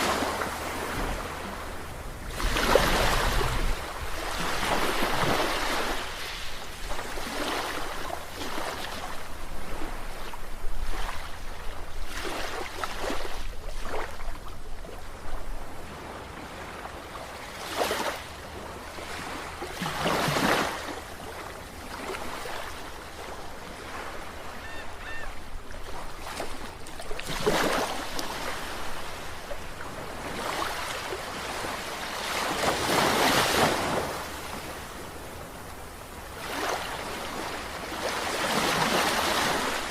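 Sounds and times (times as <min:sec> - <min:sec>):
ocean waves washing in: 0:00.0 - 0:14.2.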